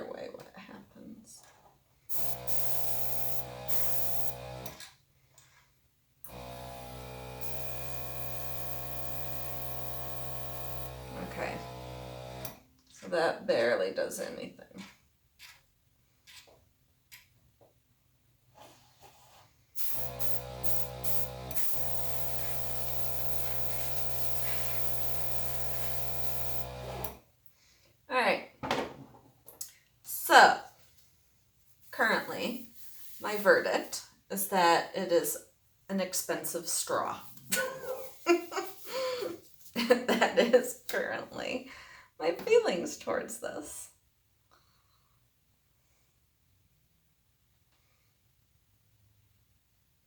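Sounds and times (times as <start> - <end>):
air hissing from nozzle: 2.1 - 4.6, 7.4 - 11.1, 19.8 - 27.1
air compressor motor hum: 2.1 - 4.8, 6.3 - 12.6, 19.8 - 27.2.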